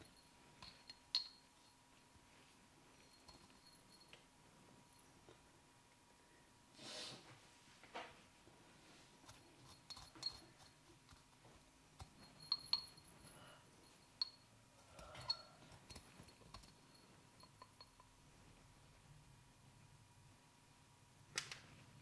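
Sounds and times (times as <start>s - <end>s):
sharp clicks and light clinks: 0.0s - 1.8s, 3.0s - 4.3s, 12.0s - 18.2s.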